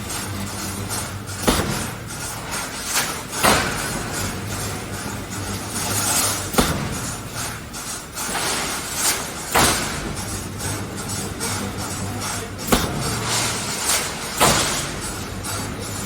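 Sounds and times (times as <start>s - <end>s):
sharp metallic clanks: 0.0s - 16.0s
welding machine hum: 0.0s - 16.0s.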